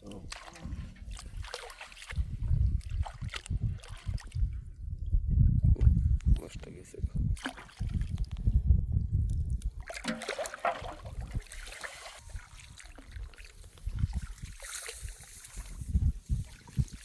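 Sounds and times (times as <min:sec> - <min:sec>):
water sloshing: 0:00.0 - 0:04.8, 0:07.3 - 0:08.5, 0:09.5 - 0:17.0
water splashing and trickling: 0:00.0 - 0:17.0.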